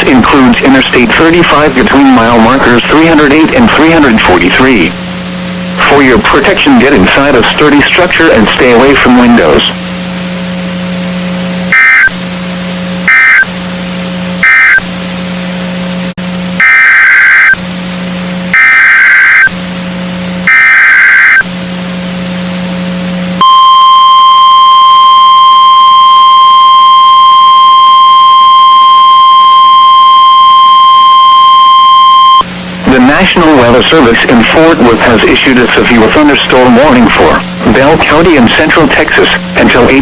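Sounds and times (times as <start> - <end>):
low hum: 0.0 - 40.0
single-pitch warning alarm tone: 11.7 - 12.2, 13.0 - 13.6, 14.4 - 14.9, 16.6 - 17.6, 18.5 - 19.6, 20.4 - 21.5, 23.4 - 32.5.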